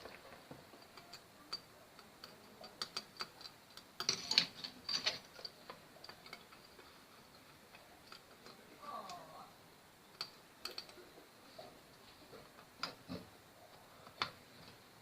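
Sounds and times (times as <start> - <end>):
small clicks and taps: 10.1 - 11.1.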